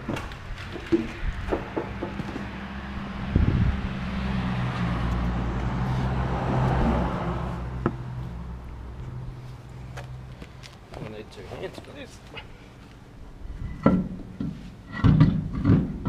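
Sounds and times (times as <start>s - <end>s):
low engine hum: 0.0s - 11.0s.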